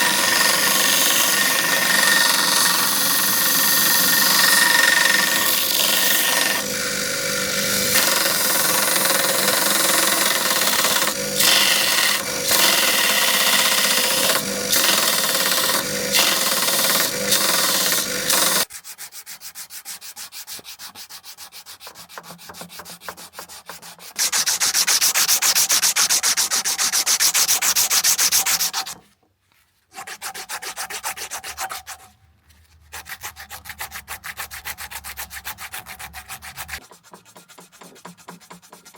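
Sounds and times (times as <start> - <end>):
power tool grinding steel: 0.0 - 18.7.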